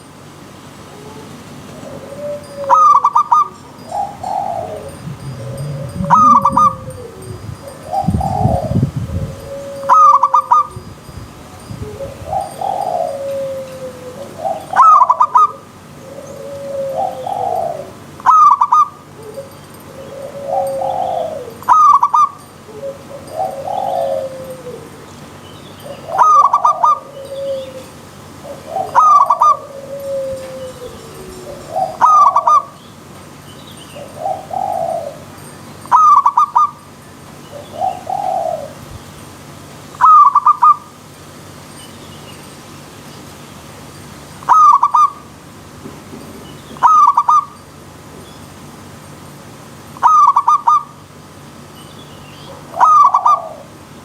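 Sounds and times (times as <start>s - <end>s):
dove cooing: 0.9s - 10.8s, 11.8s - 25.1s, 25.8s - 32.8s, 34.0s - 35.3s, 35.9s - 36.8s, 37.5s - 38.9s, 44.5s - 45.2s, 46.8s - 47.5s, 50.0s - 50.9s, 52.5s - 53.8s.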